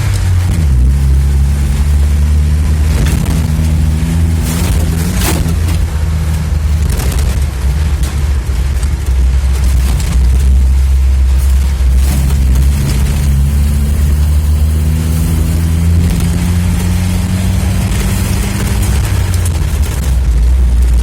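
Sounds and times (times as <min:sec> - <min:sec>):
vehicle knocks and rattles: 0:00.0 - 0:13.6
off-road vehicle engine running: 0:00.0 - 0:21.0.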